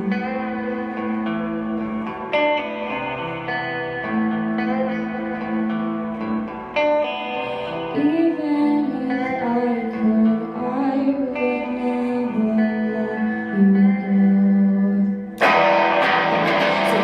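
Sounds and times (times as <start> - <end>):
person singing: 0.0 - 1.8, 7.0 - 17.0
guitar: 0.0 - 17.0.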